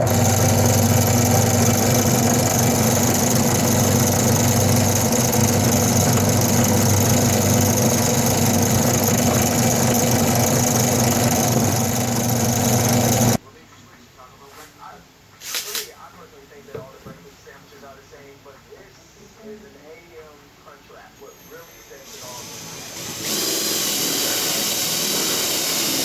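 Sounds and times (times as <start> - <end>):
power tool motor running: 0.0 - 13.4, 21.4 - 26.0.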